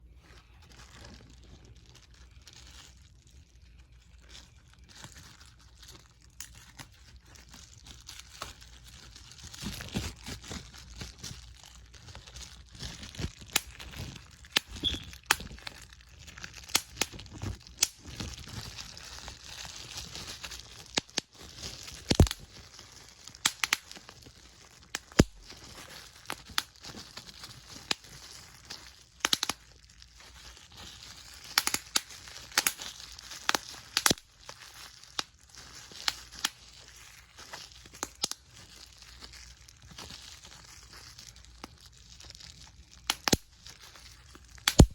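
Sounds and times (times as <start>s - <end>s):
crinkling handling noise: 0.0s - 44.9s
sharp irregular pops: 22.1s - 22.4s, 44.6s - 44.9s.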